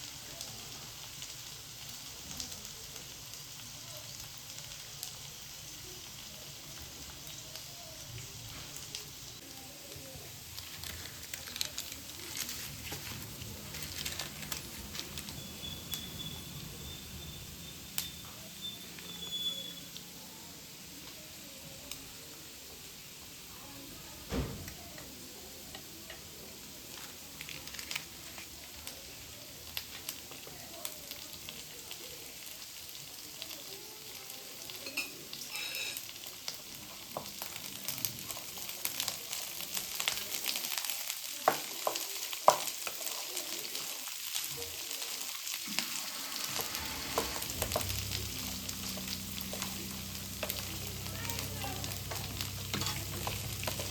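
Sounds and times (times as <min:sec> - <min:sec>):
food sizzling in a pan: 0:00.0 - 0:53.9
utensil scraping a pan: 0:45.6 - 0:53.9.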